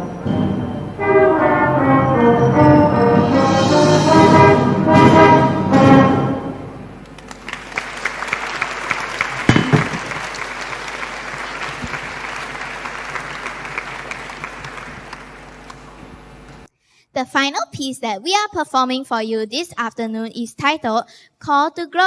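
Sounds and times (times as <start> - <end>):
brass band chord: 0.0 - 7.0
audience applause: 7.0 - 16.0
thump: 9.5 - 10.1.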